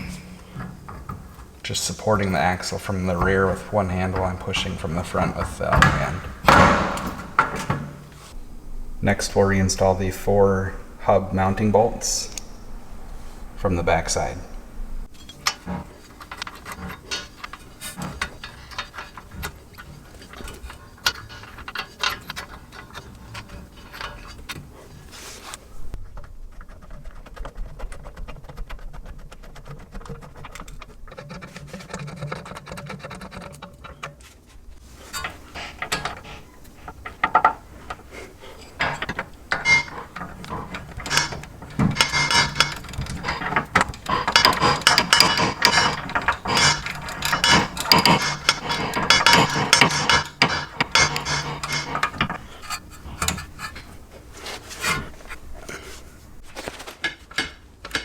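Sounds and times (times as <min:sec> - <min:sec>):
metal tool clatter: 0:00.0 - 0:08.4, 0:15.0 - 0:25.3, 0:33.5 - 0:58.0
hand ratchet clicking: 0:34.9 - 0:54.0.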